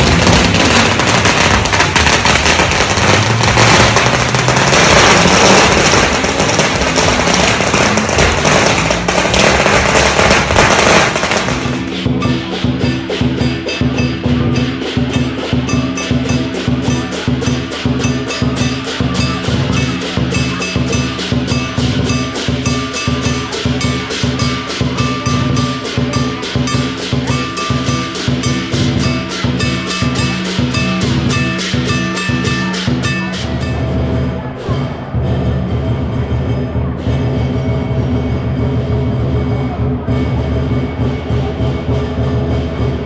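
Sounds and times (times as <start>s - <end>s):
firecrackers crackling: 0.0s - 33.8s
music with percussion beat: 0.0s - 43.0s.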